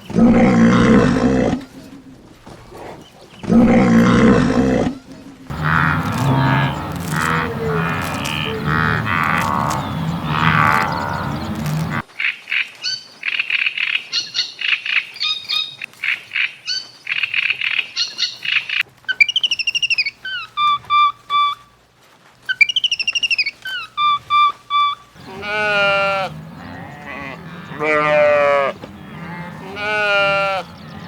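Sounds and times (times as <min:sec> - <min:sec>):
animal bleating: 0:00.1 - 0:01.7, 0:03.5 - 0:12.1, 0:24.8 - 0:31.0
bird chirping: 0:05.5 - 0:12.1, 0:14.1 - 0:21.6, 0:22.5 - 0:31.0
whistled bird calls: 0:16.4 - 0:21.7, 0:22.4 - 0:28.0.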